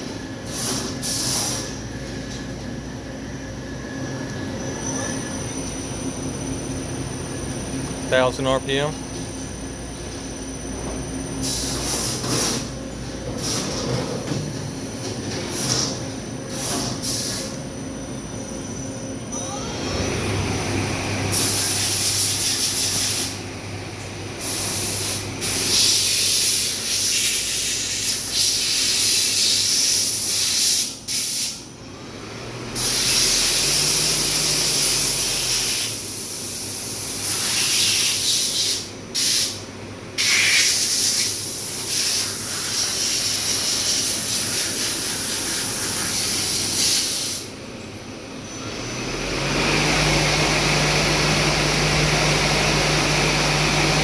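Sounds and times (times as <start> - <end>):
coolant spray hiss: 0.5 - 1.7, 11.4 - 12.8, 16.5 - 17.5, 21.3 - 23.4, 24.4 - 31.6, 32.8 - 39.6, 40.2 - 47.5.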